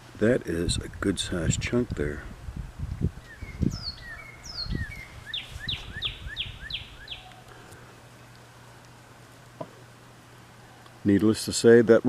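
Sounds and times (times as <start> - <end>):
songbird singing: 3.0 - 9.0.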